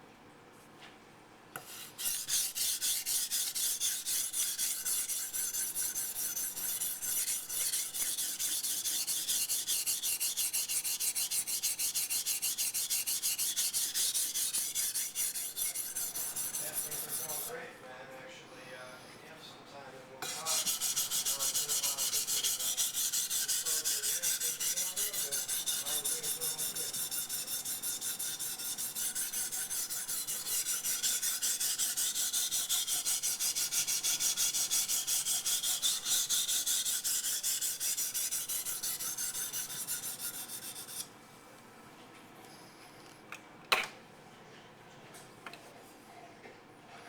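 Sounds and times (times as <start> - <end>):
knife scraping on whetstone: 1.6 - 17.6, 20.2 - 41.1.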